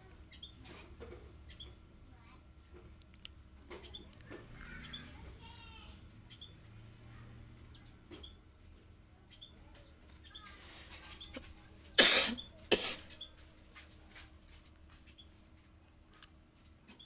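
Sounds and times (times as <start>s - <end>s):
person coughing: 12.0s - 13.1s.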